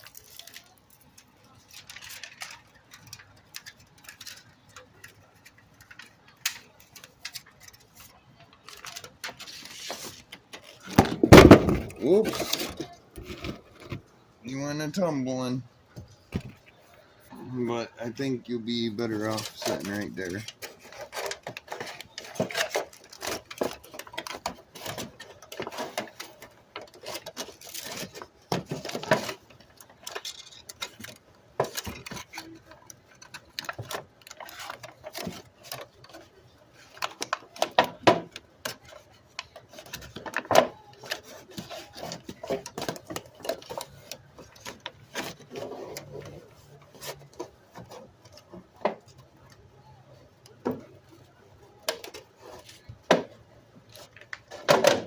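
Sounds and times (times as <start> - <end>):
hands handling a vent: 19.1 - 49.7.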